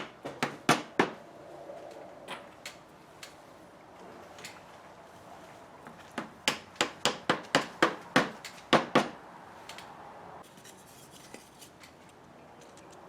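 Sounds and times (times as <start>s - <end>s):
hammer tapping: 6.1s - 9.2s.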